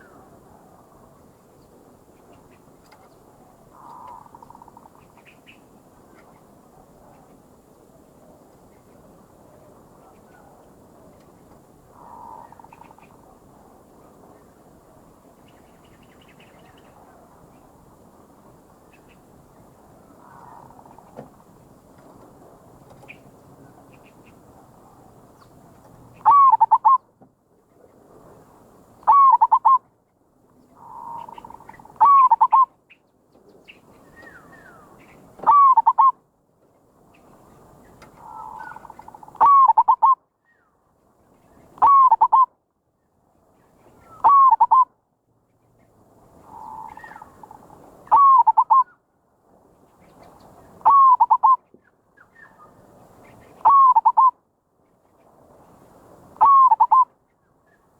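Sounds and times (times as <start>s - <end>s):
dove cooing: 26.2s - 27.0s, 29.1s - 29.8s, 30.8s - 32.7s, 35.4s - 36.1s, 38.2s - 40.2s, 41.8s - 42.5s, 44.2s - 44.9s, 46.4s - 48.9s, 50.8s - 51.6s, 53.6s - 54.3s, 56.4s - 57.0s.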